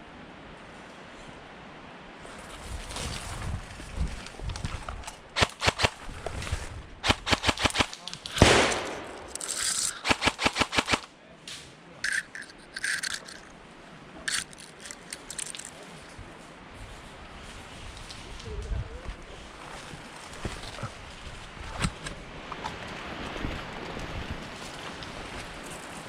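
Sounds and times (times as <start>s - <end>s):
airsoft guns firing bursts: 5.4s - 6.0s, 7.0s - 11.1s.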